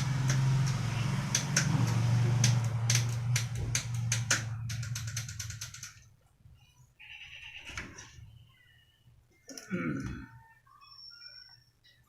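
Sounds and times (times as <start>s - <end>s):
low fan hum: 0.0s - 6.8s
bicycle parts clicking: 0.2s - 6.1s
ratcheting clicks: 0.2s - 6.1s.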